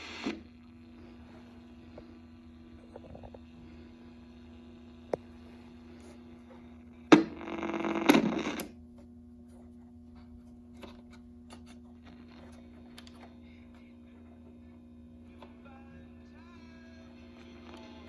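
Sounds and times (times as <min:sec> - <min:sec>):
low electrical hum: 0:00.0 - 0:18.0
radio switch click: 0:07.1 - 0:08.8.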